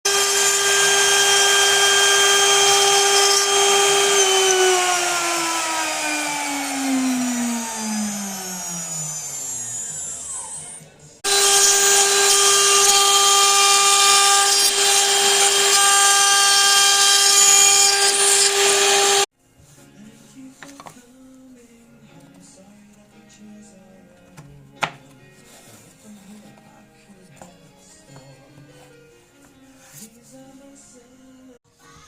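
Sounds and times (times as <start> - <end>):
router spindle whining: 0.1 - 19.3.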